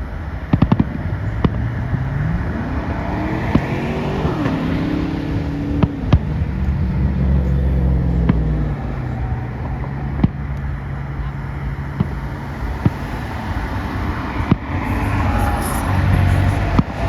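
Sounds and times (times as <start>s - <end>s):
vehicle engine accelerating: 0.0s - 17.0s.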